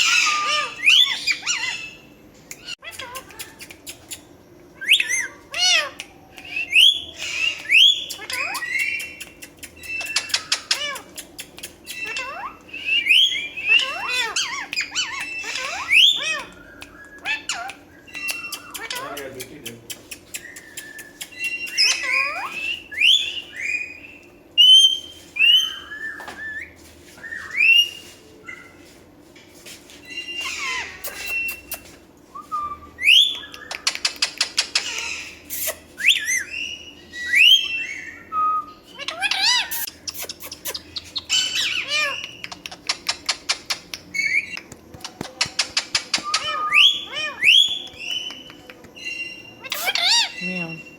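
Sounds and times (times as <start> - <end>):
parrot whistling and chirping: 0.0 - 11.0, 11.8 - 19.0, 20.3 - 28.8, 30.0 - 44.6, 45.6 - 50.9
parrot rapid clicking: 17.5 - 22.3, 33.5 - 35.1, 41.9 - 49.0.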